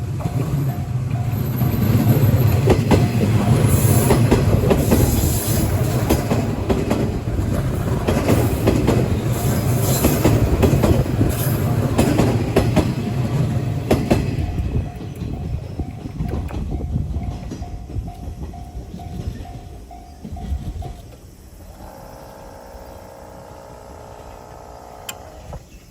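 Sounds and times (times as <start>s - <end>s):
train wheels rumbling over rails: 0.0s - 25.9s.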